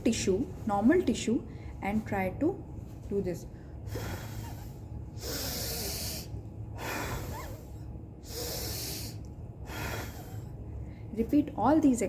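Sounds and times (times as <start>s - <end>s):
woman blowing hissing breaths: 3.8s - 10.6s.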